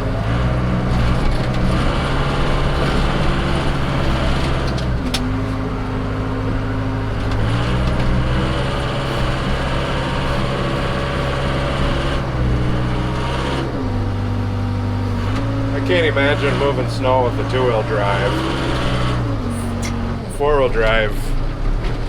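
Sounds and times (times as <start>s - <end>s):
diesel engine revving: 0.0s - 22.0s.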